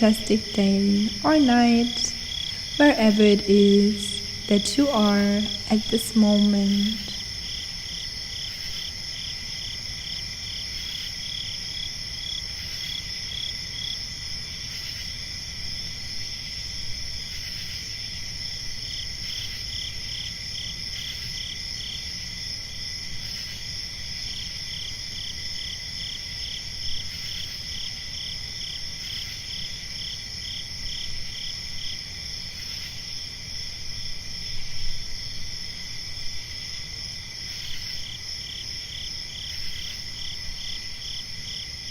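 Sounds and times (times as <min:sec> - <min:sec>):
crickets chirping: 0:00.0 - 0:41.9.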